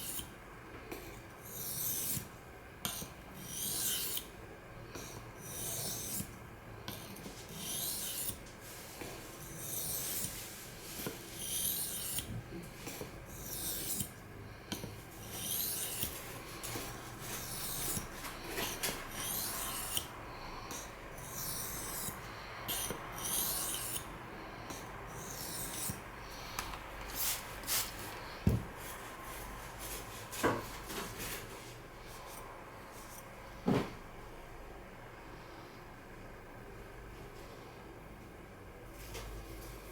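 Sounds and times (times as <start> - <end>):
knife rasping on a whetstone: 0.0 - 0.3, 1.0 - 2.3, 2.9 - 4.3, 5.0 - 6.3, 6.9 - 8.4, 9.4 - 20.1, 20.7 - 24.1, 24.7 - 26.0.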